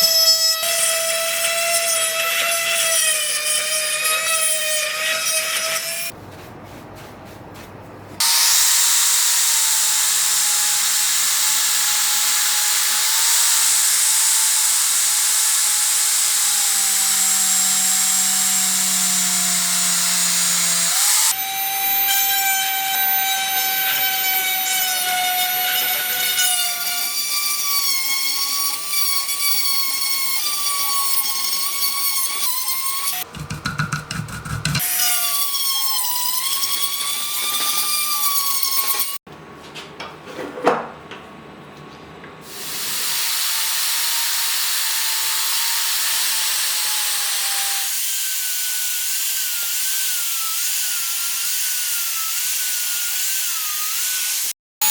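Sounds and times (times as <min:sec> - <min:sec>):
power tool grinding metal: 0:08.2 - 0:39.2, 0:42.5 - 0:54.9.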